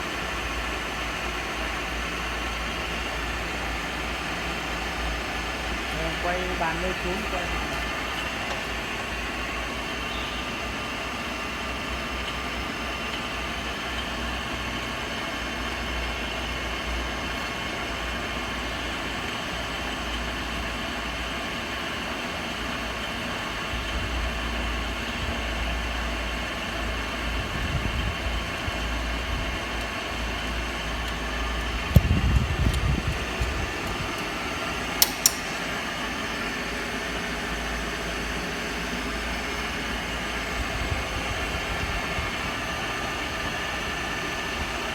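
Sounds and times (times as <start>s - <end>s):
drill machine humming: 0.0s - 44.9s
machine clunks: 31.9s - 35.9s
sharp clicks: 35.0s - 35.7s.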